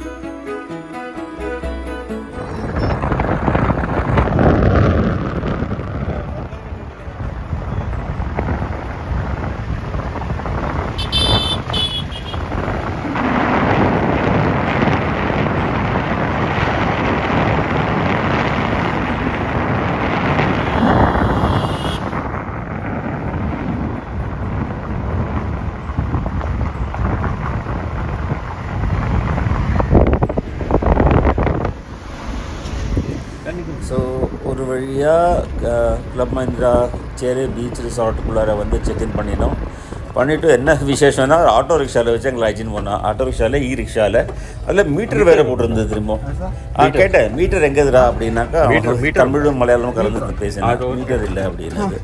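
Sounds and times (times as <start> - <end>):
vehicle horn tooting: 0.0 - 3.8, 10.8 - 12.8, 20.3 - 22.4
car road and wind noise: 0.0 - 52.0
steady low rumble: 1.7 - 52.0.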